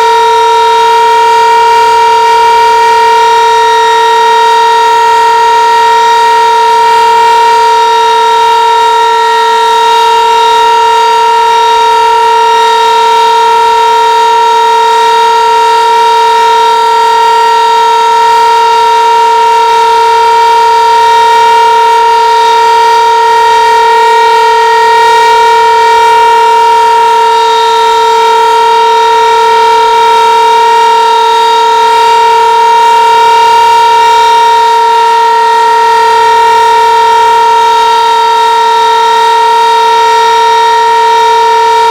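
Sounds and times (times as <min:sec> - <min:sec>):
tornado siren steady tone: 0:00.0 - 0:41.9.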